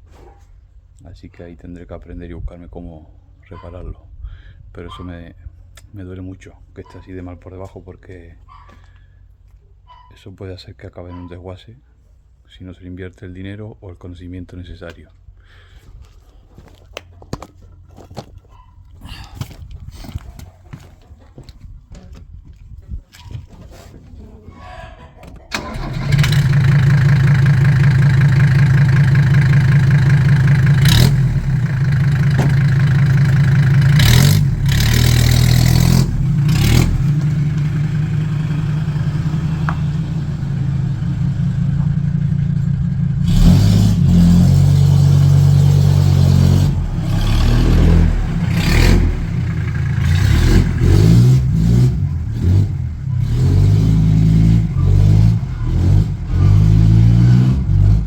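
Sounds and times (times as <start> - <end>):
diesel engine revving: 25.5 - 58.0.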